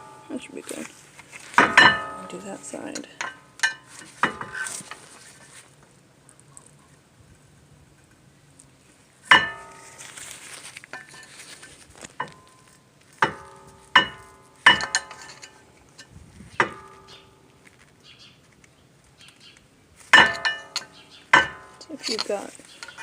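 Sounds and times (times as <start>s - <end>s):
steel tools clinking on metal: 1.6s - 4.7s, 14.0s - 16.1s, 20.2s - 23.0s.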